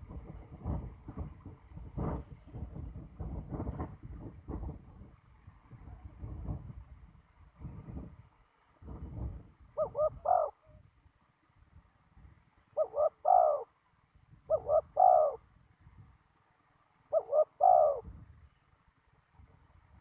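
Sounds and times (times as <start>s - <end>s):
dove cooing: 9.8s - 10.8s, 12.7s - 13.7s, 14.5s - 15.4s, 17.1s - 18.2s.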